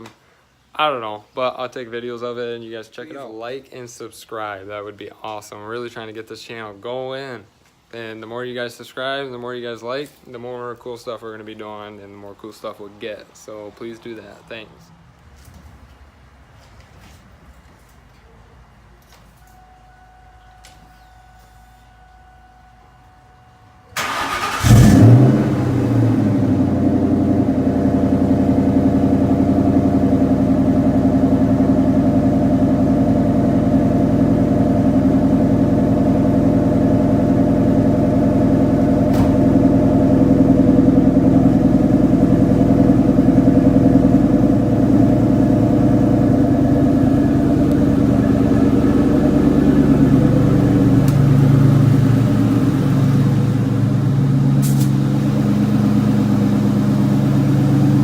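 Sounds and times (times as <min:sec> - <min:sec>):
car engine idling: 0:23.9 - 0:58.0.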